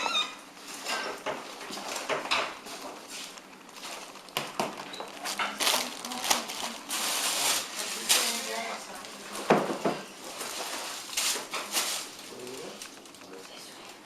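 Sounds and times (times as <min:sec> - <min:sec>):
dishes and utensils clattering: 0:00.7 - 0:03.0, 0:09.4 - 0:10.6.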